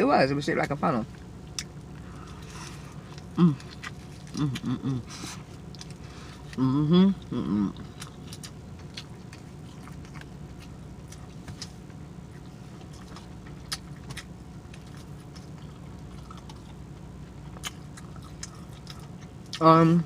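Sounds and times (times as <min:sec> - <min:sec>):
steady low hum: 0:00.0 - 0:20.0
person chewing with wet mouth clicks: 0:17.6 - 0:19.6.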